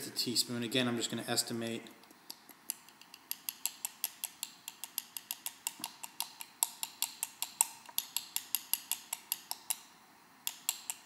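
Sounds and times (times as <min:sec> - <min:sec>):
teaspoon tapping on container: 0:02.7 - 0:09.8.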